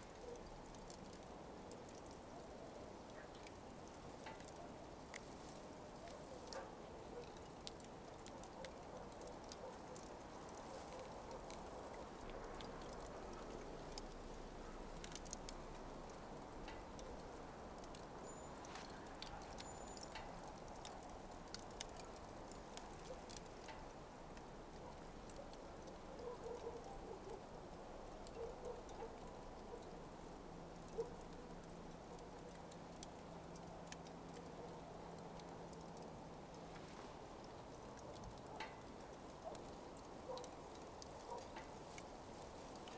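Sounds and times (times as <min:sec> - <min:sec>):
coals crackling and popping: 0:00.0 - 0:42.9
soft steady hiss: 0:00.0 - 0:42.9.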